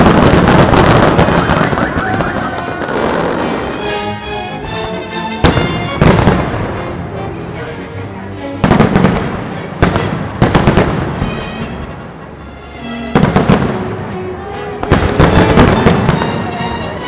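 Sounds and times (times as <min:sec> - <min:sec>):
fireworks bangs and crackle: 0:00.0 - 0:03.6, 0:05.4 - 0:06.8, 0:08.6 - 0:12.2, 0:13.1 - 0:14.0, 0:14.8 - 0:17.0
music: 0:01.9 - 0:17.0.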